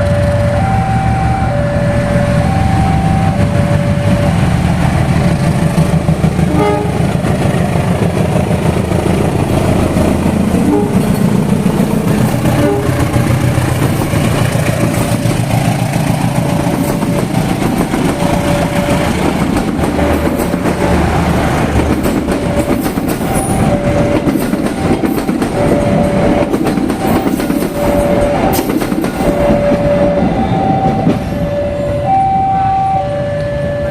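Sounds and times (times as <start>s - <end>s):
repeating two-note tone: 0.0s - 4.6s, 29.3s - 33.9s
diesel locomotive passing: 0.0s - 33.9s
train wheels clattering over rail joints: 3.6s - 31.4s.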